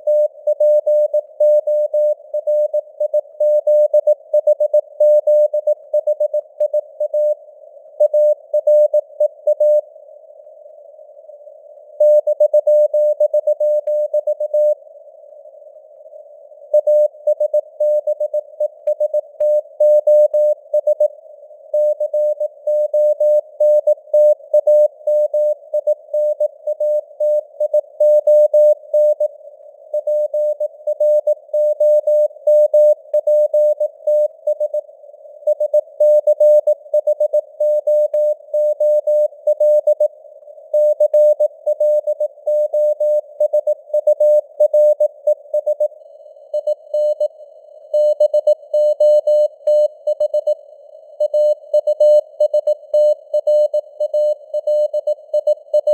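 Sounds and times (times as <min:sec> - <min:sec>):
morse code beeps: 0:46.6 - 0:47.3, 0:48.0 - 0:50.6, 0:51.2 - 0:55.9.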